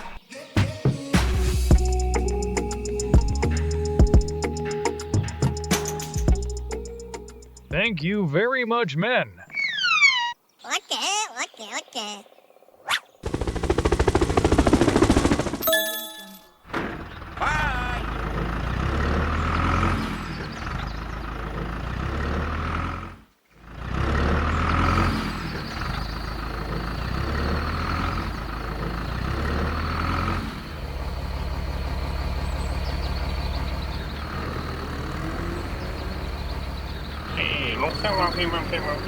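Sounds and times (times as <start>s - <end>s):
toy truck engine rumble: 16.7s - 39.0s.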